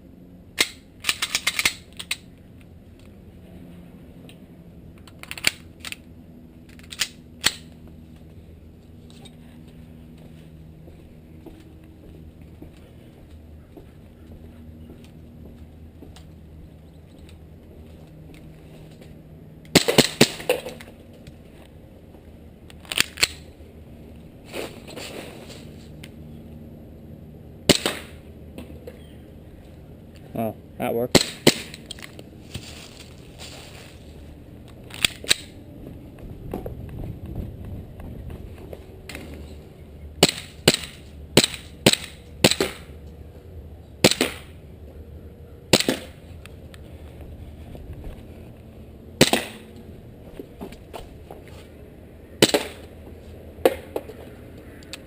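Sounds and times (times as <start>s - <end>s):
airsoft pistol shots cracking: 27.7s - 28.2s, 31.1s - 31.8s, 40.2s - 42.9s, 44.0s - 44.5s, 45.7s - 46.2s, 49.2s - 49.6s, 52.4s - 52.8s.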